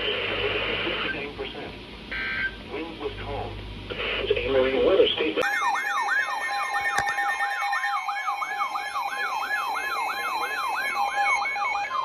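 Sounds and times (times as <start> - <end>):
falling siren-like sweep: 5.4 - 12.0.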